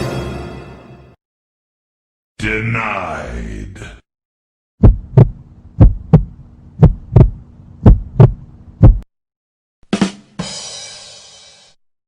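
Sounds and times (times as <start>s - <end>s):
low hum: 4.8s - 9.0s
heartbeat thumps: 4.8s - 9.1s.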